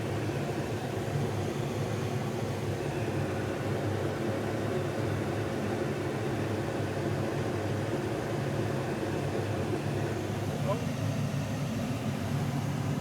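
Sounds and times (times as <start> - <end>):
truck idling from inside cab: 8.4 - 13.0.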